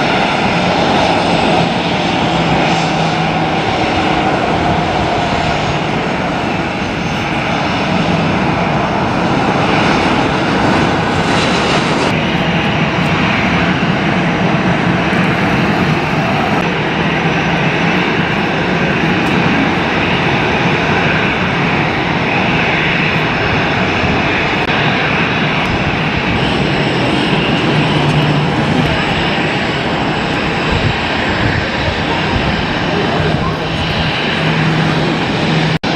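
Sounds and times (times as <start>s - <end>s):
jet engines running: 0.0s - 35.9s.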